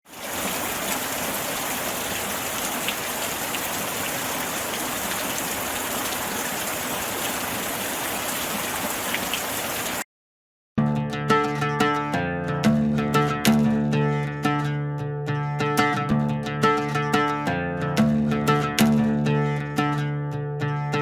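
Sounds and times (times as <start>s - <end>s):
water rushing: 0.1s - 10.0s.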